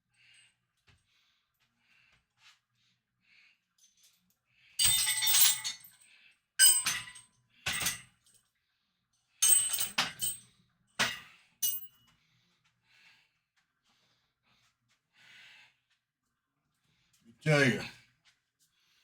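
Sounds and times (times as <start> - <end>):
metal chains jangling and clinking: 3.8 - 8.4, 9.4 - 12.0.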